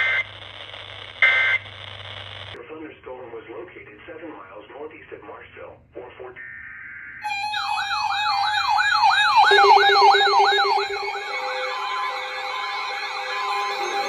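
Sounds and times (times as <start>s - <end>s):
electronic siren yelping: 7.1s - 14.0s.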